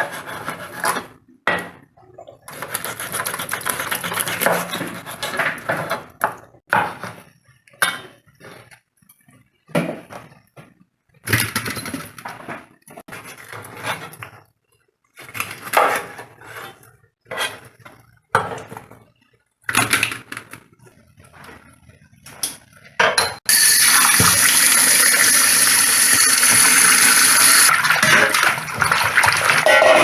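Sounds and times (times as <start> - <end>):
kitchen clattering: 22.3 - 23.5, 27.5 - 30.0
water running from a tap: 23.5 - 29.7.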